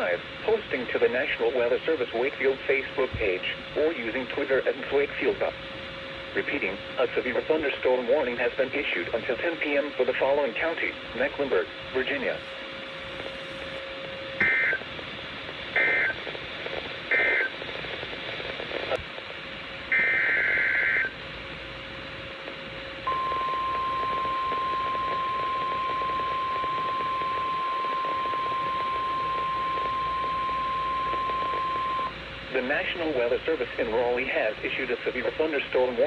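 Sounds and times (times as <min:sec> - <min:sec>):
steady alarm tone: 0:12.2 - 0:13.8, 0:23.0 - 0:32.2.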